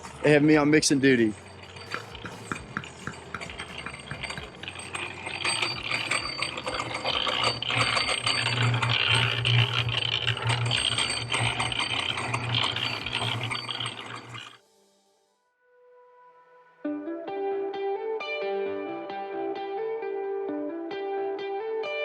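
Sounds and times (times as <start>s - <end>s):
mortar being mixed: 1.2s - 14.6s.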